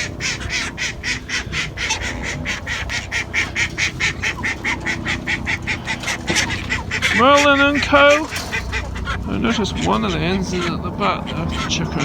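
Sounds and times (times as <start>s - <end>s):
ducks quacking: 0.0s - 12.0s.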